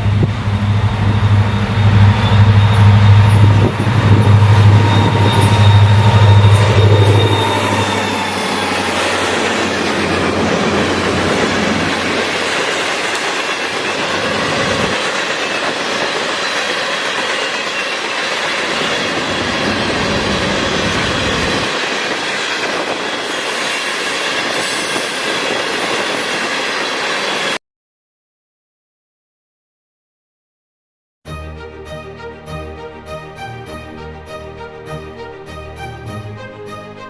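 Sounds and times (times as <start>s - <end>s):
rumble of railcars: 0.0s - 27.6s
thin wheel squeal: 4.2s - 10.0s.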